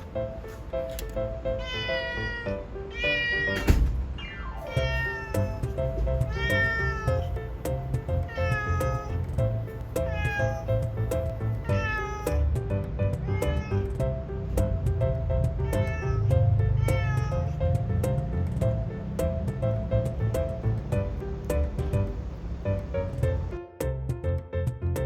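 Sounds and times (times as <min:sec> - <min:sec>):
cat meowing: 0:01.5 - 0:14.1, 0:15.4 - 0:18.1
background music with steady beat: 0:04.8 - 0:25.0.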